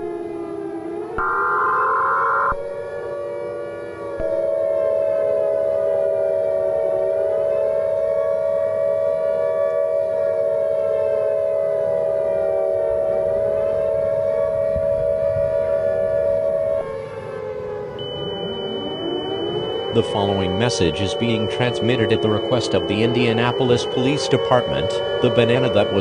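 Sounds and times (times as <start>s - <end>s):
civil defense siren wailing: 0.0s - 26.0s
loud steady tone: 1.0s - 26.0s.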